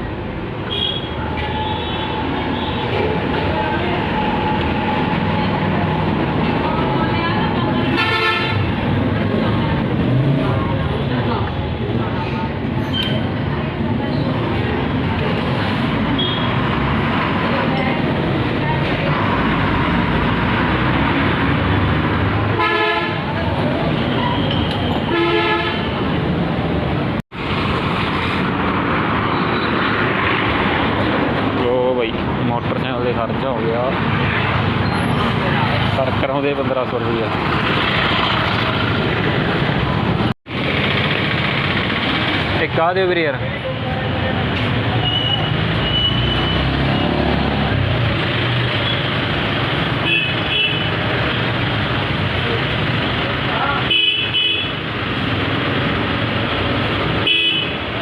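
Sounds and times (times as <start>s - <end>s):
road traffic: 0.0s - 58.0s
vehicle horn: 7.9s - 8.7s, 22.6s - 23.2s, 25.0s - 26.0s, 50.0s - 50.9s, 53.8s - 54.8s, 57.2s - 57.8s
horn toots: 22.6s - 23.3s, 24.2s - 26.0s.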